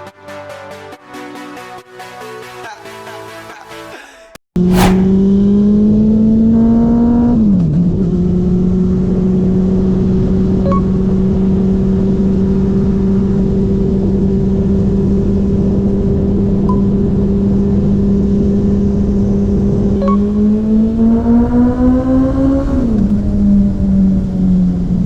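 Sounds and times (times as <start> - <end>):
wind rush: 4.6 - 5.3.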